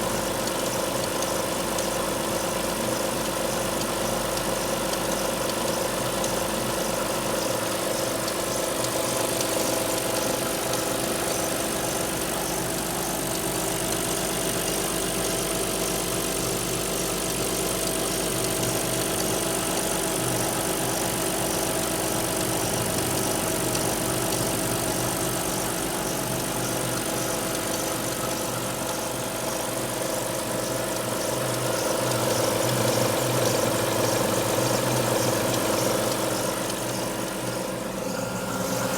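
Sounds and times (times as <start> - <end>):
car engine idling: 0.0 - 38.9.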